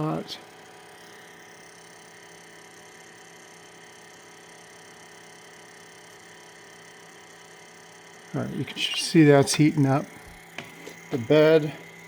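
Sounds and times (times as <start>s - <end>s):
three d printer humming: 0.0s - 12.0s.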